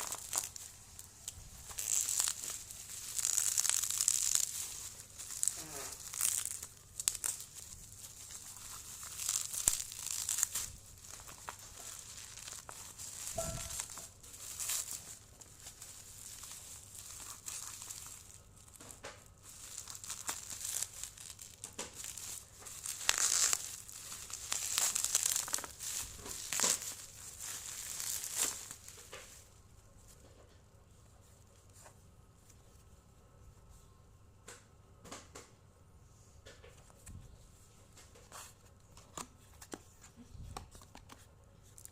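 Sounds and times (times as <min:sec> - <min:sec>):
packaging crinkling and tearing: 0:00.0 - 0:29.6.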